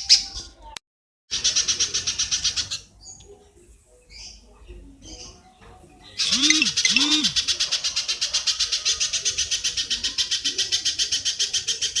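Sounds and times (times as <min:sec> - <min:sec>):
fast chattering bird call: 0:06.2 - 0:12.0
low hooting notes: 0:06.3 - 0:07.4.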